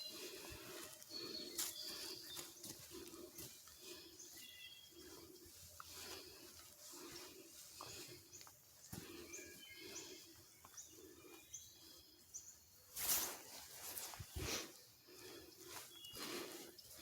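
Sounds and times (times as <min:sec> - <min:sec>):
birds chirping: 0:00.0 - 0:17.0.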